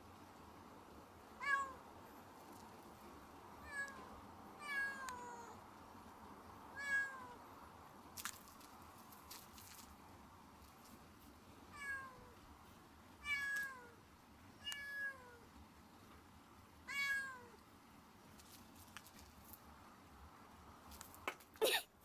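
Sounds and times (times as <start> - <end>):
cat meowing: 3.6 - 5.6, 6.8 - 7.4, 11.8 - 12.3, 14.6 - 15.4, 16.9 - 17.6.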